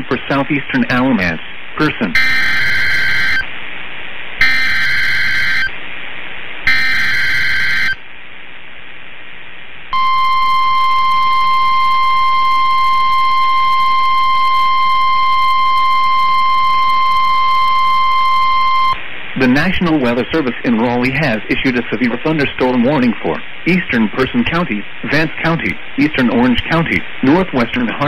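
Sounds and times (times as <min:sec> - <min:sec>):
steady warning alarm tone: 0:02.1 - 0:03.5, 0:04.4 - 0:05.8, 0:06.7 - 0:08.0, 0:09.9 - 0:19.0.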